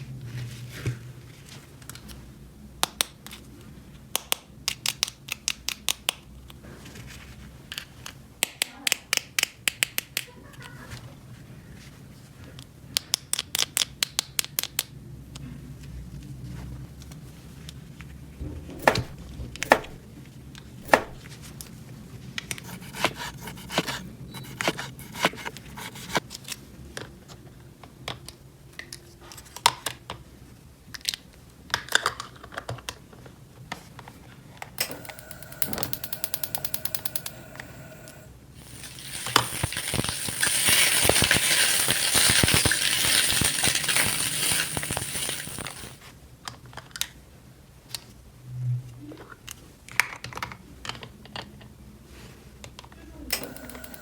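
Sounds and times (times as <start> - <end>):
toy kitchen pieces clattering: 18.8 - 20.0, 20.8 - 21.2, 38.6 - 46.0
loud steady hiss: 34.8 - 46.0.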